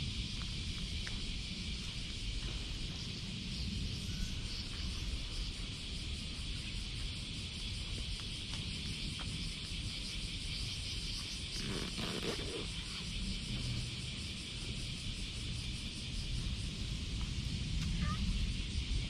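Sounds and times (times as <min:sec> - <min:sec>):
high-pitched insect drone: 0:00.0 - 0:19.0
low outdoor rumble: 0:11.4 - 0:19.0.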